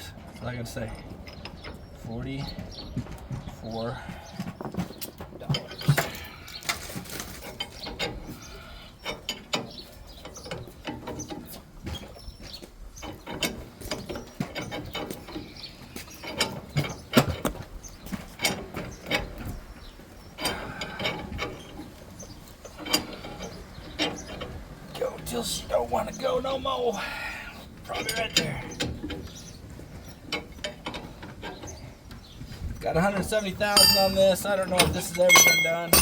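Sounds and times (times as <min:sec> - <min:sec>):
metal tools clicking and knocking: 0:33.4 - 0:36.0.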